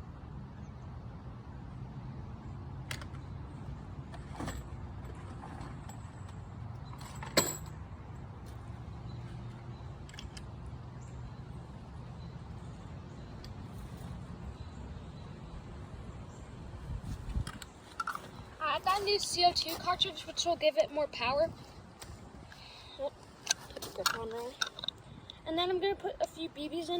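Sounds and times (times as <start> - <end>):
pistol metallic clicks and rattles: 23.4 - 25.4.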